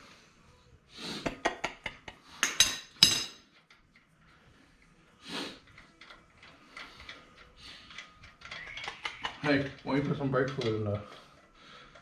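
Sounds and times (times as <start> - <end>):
metal hand tools clinking: 2.4 - 3.5.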